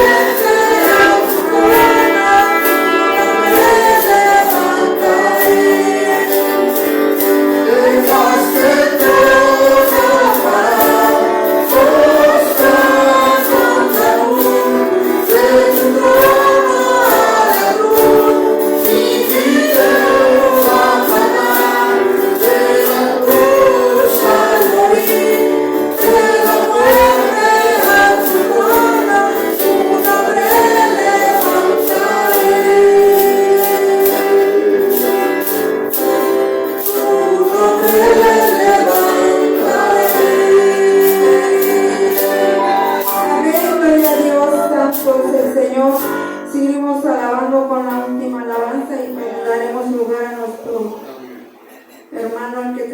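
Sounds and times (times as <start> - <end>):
instrumental accompaniment: 0.0 - 46.7
congregation singing a hymn: 0.0 - 52.2
steady percussive beat: 42.2 - 44.4.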